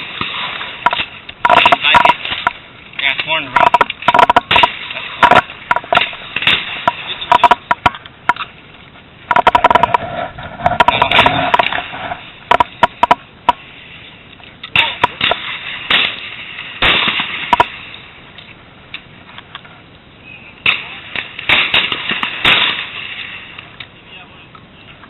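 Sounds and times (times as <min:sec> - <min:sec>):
shotgun cracks: 0:14.7 - 0:17.7, 0:20.6 - 0:23.1.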